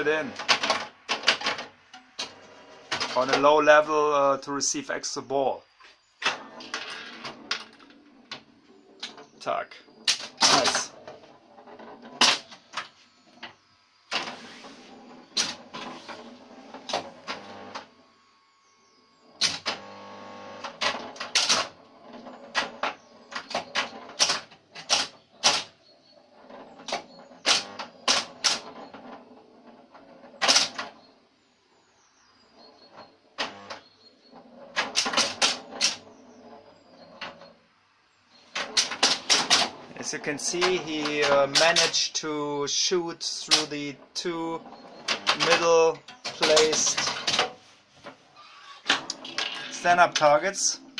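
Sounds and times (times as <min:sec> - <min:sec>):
pinball machine clacks and snaps: 0:00.4 - 0:03.4, 0:20.8 - 0:21.7, 0:22.5 - 0:25.7, 0:26.8 - 0:28.8, 0:30.4 - 0:30.9, 0:34.8 - 0:36.0, 0:38.6 - 0:39.7.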